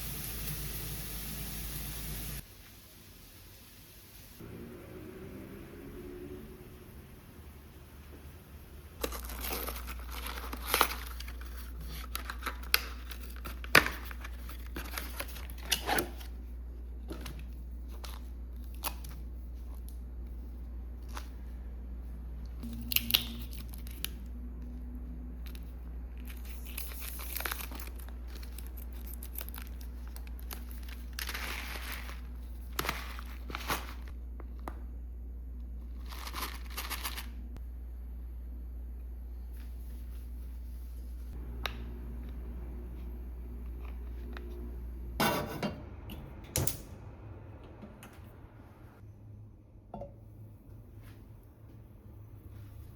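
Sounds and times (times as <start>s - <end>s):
rustling and crinkling: 9.0s - 21.6s, 23.4s - 34.8s, 35.8s - 37.5s.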